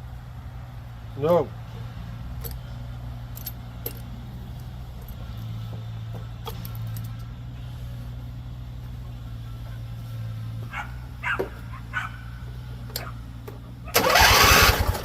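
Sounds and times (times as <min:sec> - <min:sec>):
steady low hum: 0:00.0 - 0:14.0
dog barking: 0:10.7 - 0:12.3.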